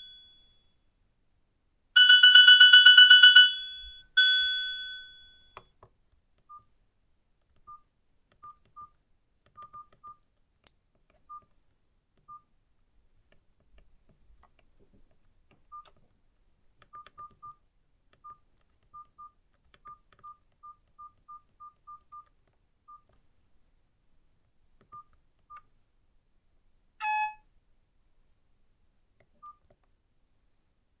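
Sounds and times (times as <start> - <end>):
phone keypad beeps: 7.6 - 10.2, 11.2 - 11.5, 12.2 - 12.5, 15.7 - 16.0, 16.9 - 17.6, 18.2 - 22.3, 22.9 - 23.1, 24.8 - 25.7, 27.0 - 27.5, 29.4 - 29.7
brief multi-note phone tone: 27.0 - 27.4.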